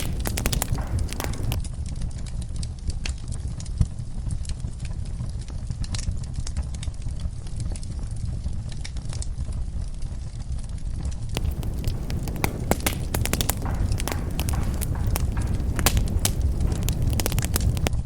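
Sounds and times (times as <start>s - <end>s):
low rumble of flames: 0.0s - 1.6s, 11.4s - 18.0s
pops and snaps of fire: 0.0s - 1.6s, 11.4s - 18.0s
wood fire crackling: 0.0s - 1.6s, 11.4s - 18.0s.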